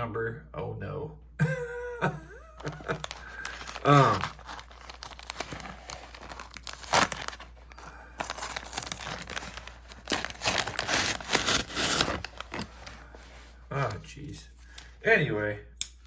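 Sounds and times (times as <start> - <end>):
packaging ripping: 2.6 - 13.2
packaging crinkling: 2.6 - 13.9.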